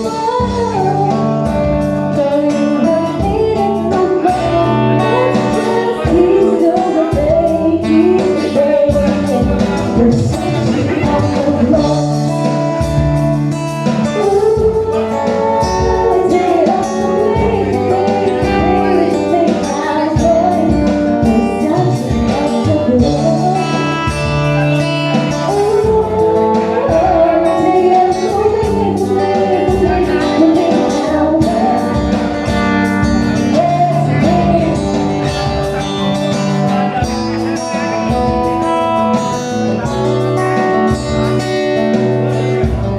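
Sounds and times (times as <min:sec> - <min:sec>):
person singing: 0:00.0 - 0:12.9, 0:13.9 - 0:35.9
guitar: 0:00.0 - 0:42.9
percussion: 0:00.0 - 0:42.9
steady bass notes: 0:08.9 - 0:15.0.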